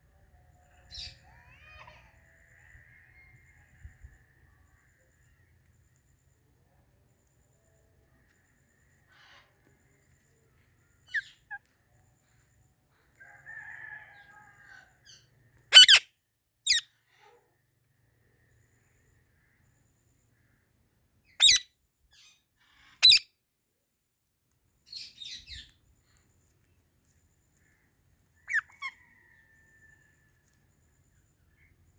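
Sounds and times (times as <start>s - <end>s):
soft bird chirps and chatter: 0.0s - 16.0s, 16.6s - 31.9s
parakeet shrill screeches: 15.7s - 16.0s, 21.4s - 21.6s, 23.0s - 23.2s.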